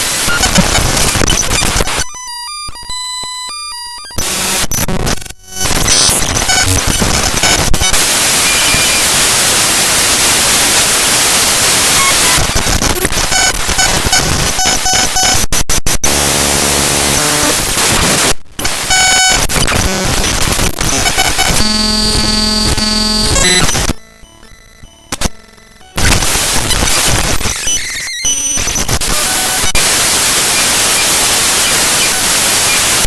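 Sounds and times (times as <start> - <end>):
harsh static hiss: 0.0 - 2.1, 4.2 - 24.2, 25.1 - 33.0
stepped buzzy pattern: 0.0 - 33.0
steady beeping tones: 21.6 - 26.1.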